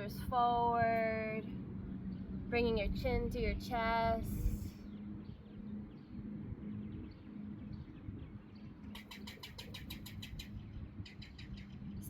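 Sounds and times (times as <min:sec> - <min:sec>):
low steady hum: 0:00.0 - 0:12.0
bird chirping rapidly: 0:08.5 - 0:12.0.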